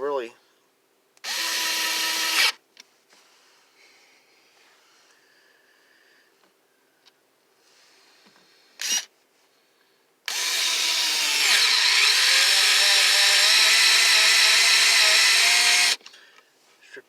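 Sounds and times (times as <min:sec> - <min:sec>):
cordless screwdriver motor whine: 0:01.2 - 0:02.6, 0:08.8 - 0:09.1, 0:10.3 - 0:16.0.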